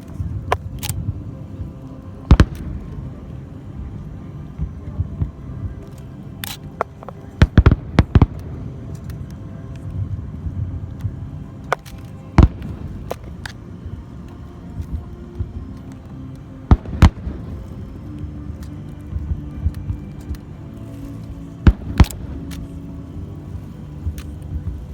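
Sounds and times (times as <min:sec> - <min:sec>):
low rumble: 0:00.0 - 0:06.4, 0:07.4 - 0:24.9.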